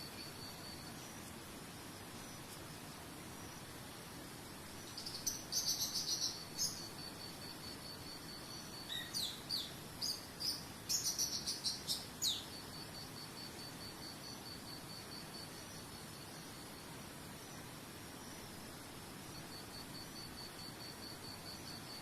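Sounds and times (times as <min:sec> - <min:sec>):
cricket trilling: 0:00.0 - 0:02.8, 0:04.7 - 0:22.0
soft even hiss: 0:00.0 - 0:22.0
small bird chirping: 0:04.8 - 0:07.2, 0:08.3 - 0:12.7.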